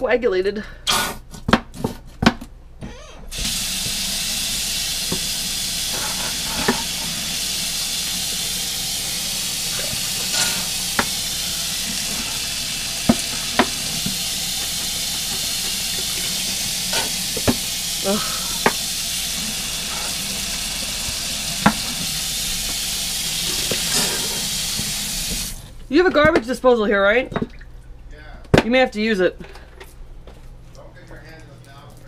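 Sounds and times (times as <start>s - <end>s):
tap running into sink: 3.3s - 25.6s
container knocking against sink: 11.9s - 17.7s, 18.6s - 18.9s, 21.6s - 22.8s.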